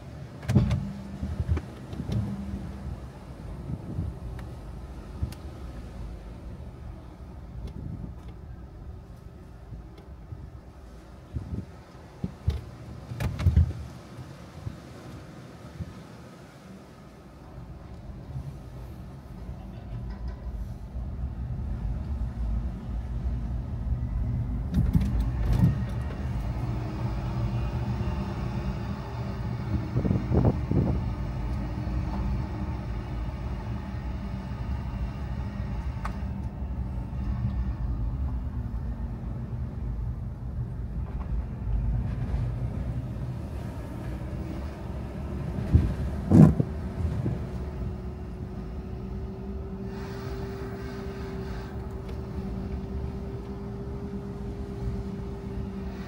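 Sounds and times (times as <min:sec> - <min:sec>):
car engine and road rumble: 0:00.0 - 0:56.0.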